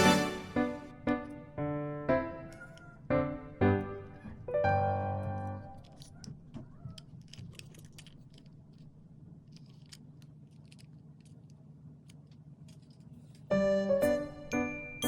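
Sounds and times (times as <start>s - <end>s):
small handling clicks and rustles: 2.5s - 3.0s, 5.2s - 13.6s.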